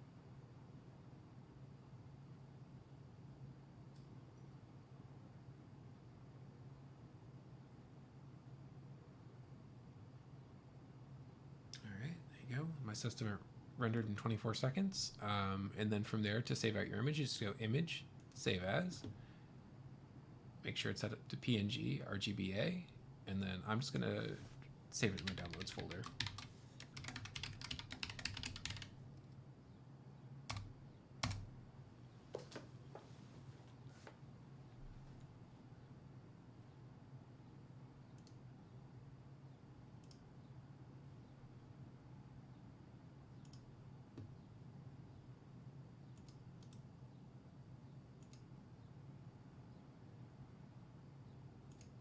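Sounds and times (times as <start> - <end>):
low steady hum: 0.0 - 52.0
loud keyboard clicks: 25.0 - 29.0, 30.5 - 31.5
typing on computer keyboard: 25.0 - 29.0, 30.5 - 31.5
computer mouse clicks: 38.1 - 38.4, 40.0 - 40.2, 43.4 - 44.3, 46.1 - 46.9, 48.2 - 48.5, 51.7 - 52.0.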